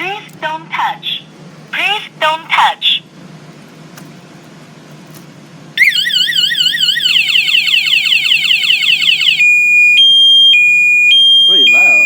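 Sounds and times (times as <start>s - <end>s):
motorcycle alarm siren: 5.8s - 12.0s.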